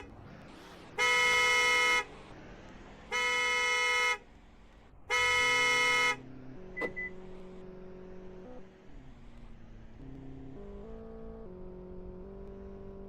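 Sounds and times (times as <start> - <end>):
car alarm horn honks: 1.0 - 2.1, 3.1 - 4.2, 5.1 - 7.2.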